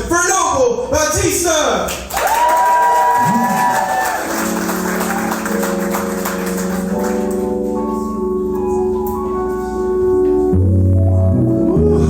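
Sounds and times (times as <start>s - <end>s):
audience applause: 2.1s - 7.5s
keyboard playing organ-like chords: 3.2s - 12.0s.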